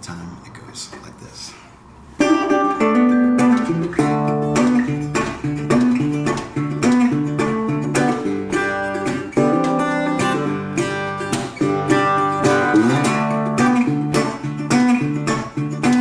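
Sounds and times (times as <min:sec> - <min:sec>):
resonator guitar blues chords: 0:02.2 - 0:16.0.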